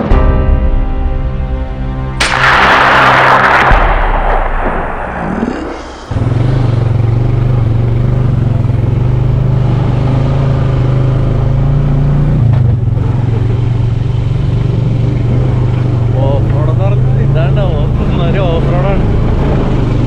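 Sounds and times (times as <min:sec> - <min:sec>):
vehicle engine running: 0:04.5 - 0:20.0.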